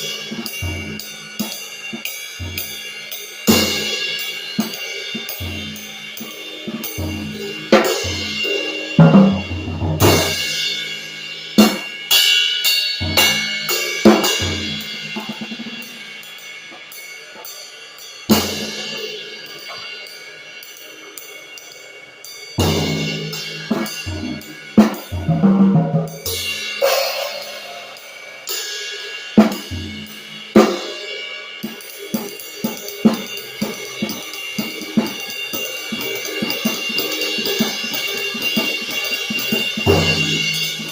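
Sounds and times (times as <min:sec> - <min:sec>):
cymbal crashes: 0:00.0 - 0:40.9.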